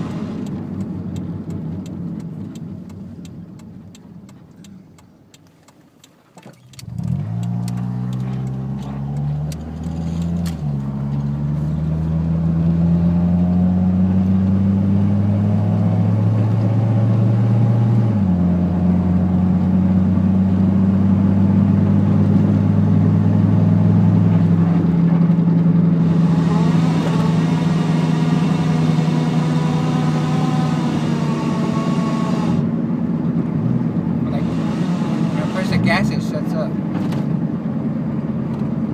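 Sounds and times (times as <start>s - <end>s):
car engine running under load: 0.0s - 38.9s
engine whining: 6.6s - 37.5s.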